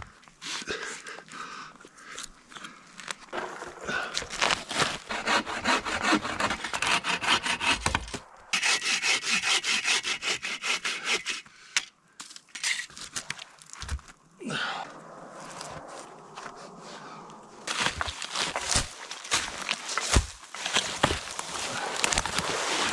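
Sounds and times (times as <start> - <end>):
hand saw cutting wood: 3.4 - 11.5.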